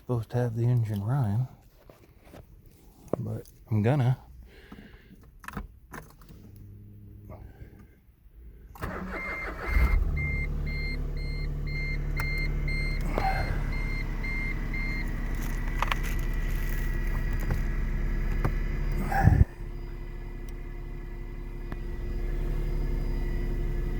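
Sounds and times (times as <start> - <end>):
car engine starting and idling: 0.0 - 23.9
dashboard warning chime beeping: 8.9 - 15.3.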